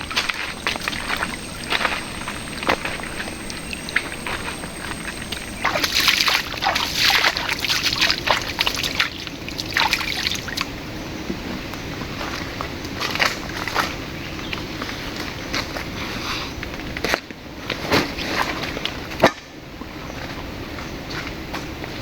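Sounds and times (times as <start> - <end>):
river water splashing: 0.0 - 10.8.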